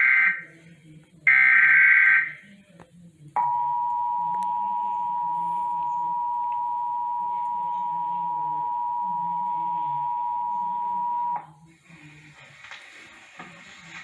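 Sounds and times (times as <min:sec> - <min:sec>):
loud steady electronic alert tone: 0:00.0 - 0:00.5, 0:01.3 - 0:02.4.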